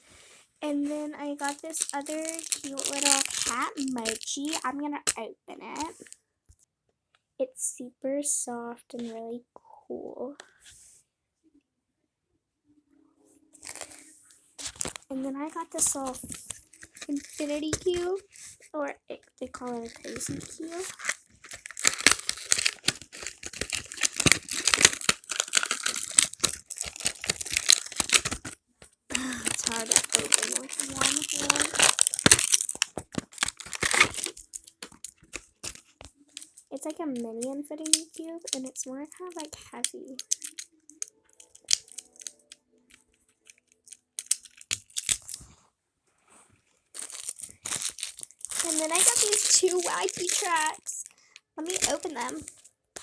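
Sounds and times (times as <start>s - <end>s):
packaging crinkling and tearing: 0.7s - 6.2s, 13.6s - 18.7s, 19.4s - 45.6s, 46.9s - 53.0s
faint steady background tones: 34.0s - 53.0s
plastic toy clicks: 36.8s - 45.3s.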